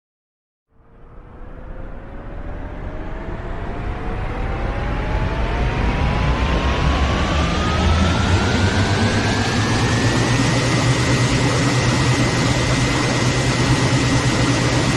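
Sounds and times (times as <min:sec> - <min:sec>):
engine whine: 0:00.8 - 0:14.9
low engine rumble: 0:03.9 - 0:14.9.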